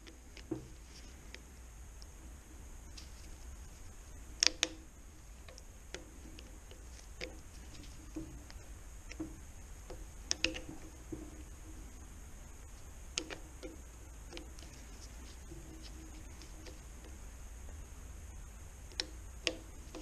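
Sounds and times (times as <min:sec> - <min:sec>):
steady low hum: 0:00.0 - 0:20.0
metallic tool clicks and taps: 0:09.9 - 0:10.8, 0:13.2 - 0:14.7.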